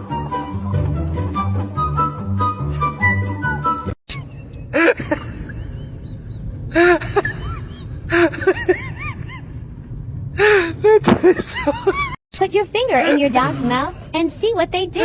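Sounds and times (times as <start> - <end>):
music: 0.0 - 4.0.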